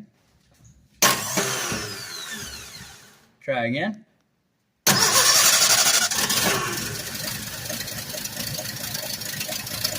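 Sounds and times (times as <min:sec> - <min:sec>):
engine starting and idling: 0:01.0 - 0:03.2, 0:04.9 - 0:09.9.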